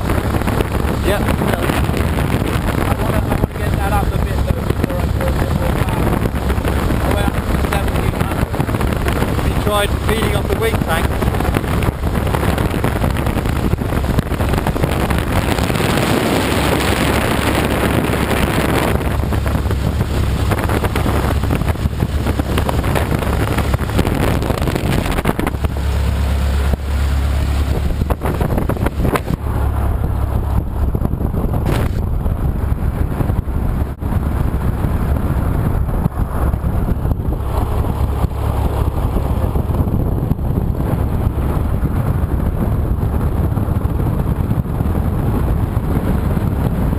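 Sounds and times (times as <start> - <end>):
aero engine running: 0.0 - 46.9
propeller wash buffeting microphone: 0.0 - 46.9.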